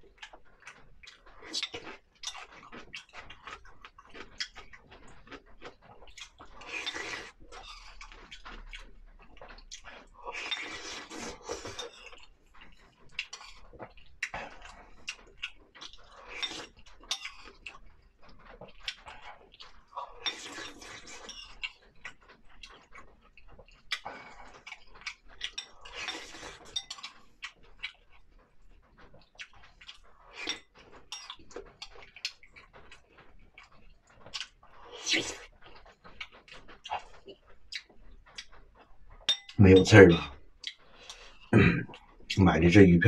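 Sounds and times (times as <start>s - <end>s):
noisy slurps: 6.1s - 8.9s, 9.7s - 12.2s, 34.3s - 35.8s
mouth eating sounds: 34.3s - 38.5s, 39.4s - 43.0s.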